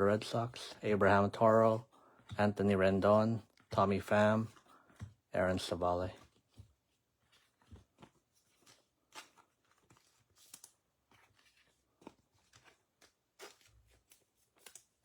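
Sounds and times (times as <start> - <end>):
cards being shuffled: 3.4 - 15.0.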